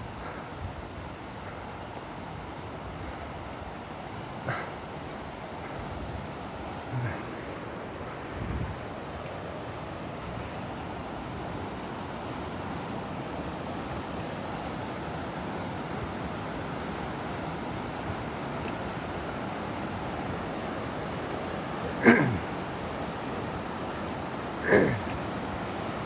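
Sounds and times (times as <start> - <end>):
water rushing: 6.6 - 26.0.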